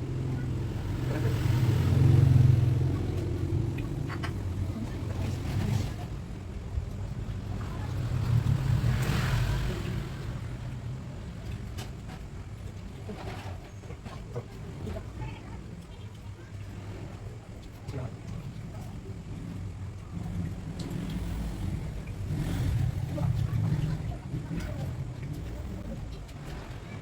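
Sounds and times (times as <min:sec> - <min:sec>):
low rumble: 0:00.0 - 0:11.9.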